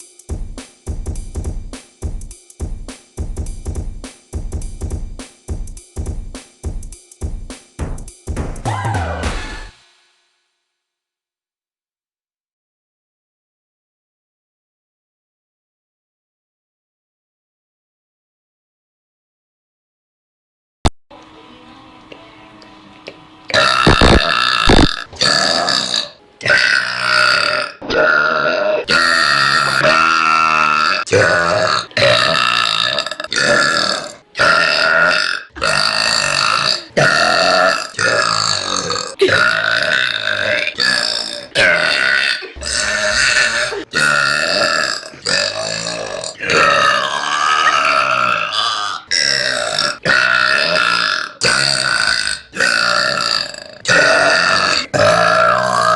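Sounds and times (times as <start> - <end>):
woman burping loudly: 23.5 - 55.9.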